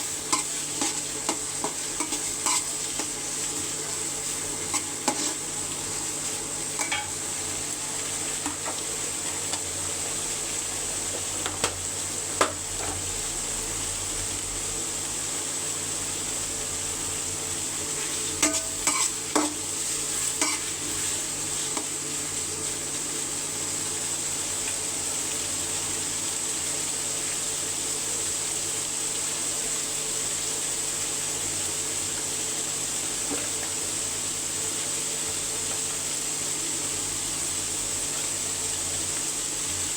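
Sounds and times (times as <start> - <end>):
food sizzling in hot oil: 0.0 - 39.9
spatula scraping a pot: 0.3 - 3.1, 4.6 - 5.5, 18.4 - 19.6.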